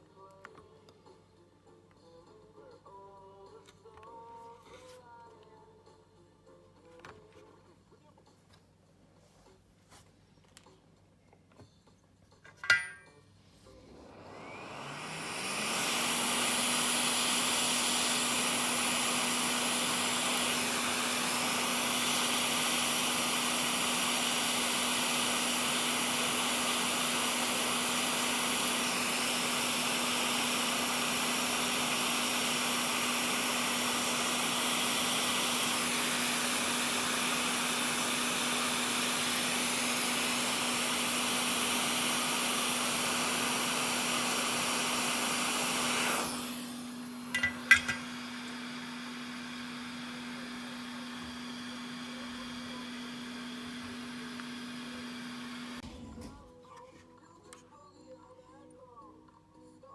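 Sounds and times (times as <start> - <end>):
electric blower motor running: 13.7 - 56.2.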